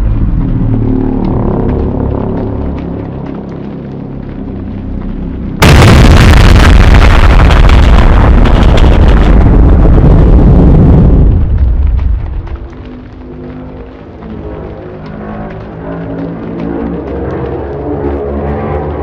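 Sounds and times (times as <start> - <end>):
low rumble: 0.0 - 19.0
loud blast of rushing noise: 5.6 - 11.8.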